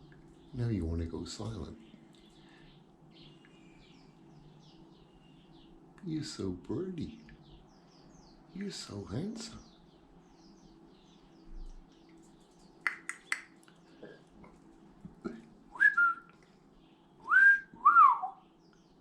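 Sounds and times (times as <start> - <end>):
faint low hum: 0.0 - 19.0
sharp clicks: 12.9 - 13.5
whistled notes: 15.8 - 16.3, 17.2 - 18.4.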